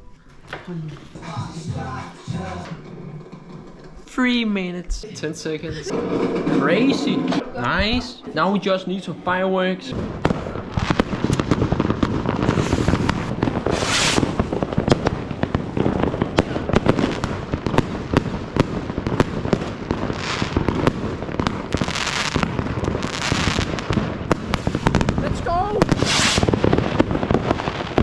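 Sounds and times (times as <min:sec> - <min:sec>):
firecrackers banging: 0:00.0 - 0:28.0
hissing crackling firework bursts: 0:09.9 - 0:28.0.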